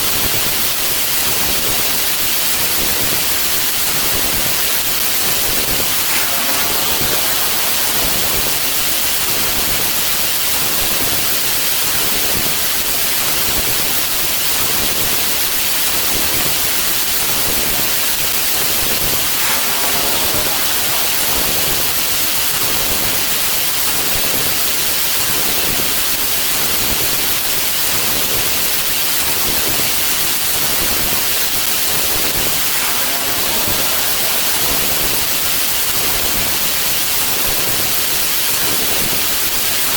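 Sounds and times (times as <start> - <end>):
loud static hiss: 3.7 - 11.9, 17.0 - 24.0, 30.7 - 37.4.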